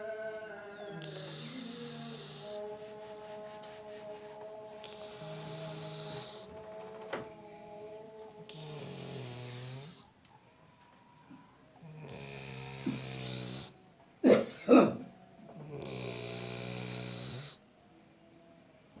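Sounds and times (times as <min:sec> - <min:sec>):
person snoring: 0:00.0 - 0:10.1, 0:11.8 - 0:13.8, 0:15.6 - 0:17.6
sharp snorts: 0:11.9 - 0:15.0, 0:15.7 - 0:17.6.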